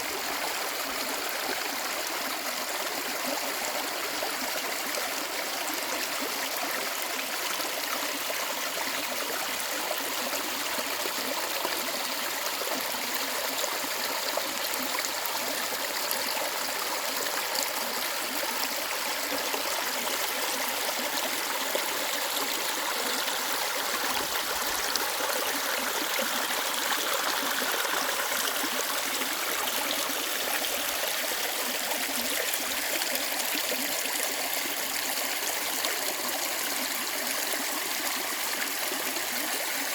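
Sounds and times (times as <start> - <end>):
stream flowing over rocks: 0.0 - 39.9.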